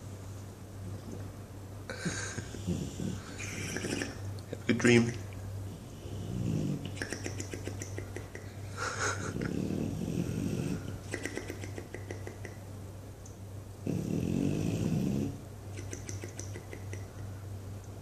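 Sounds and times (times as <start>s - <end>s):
dog snoring: 2.1s - 4.2s, 5.7s - 7.7s, 9.3s - 11.6s, 13.8s - 16.3s
lips flapping: 3.4s - 4.2s, 6.8s - 8.6s, 10.8s - 12.6s, 15.7s - 17.3s.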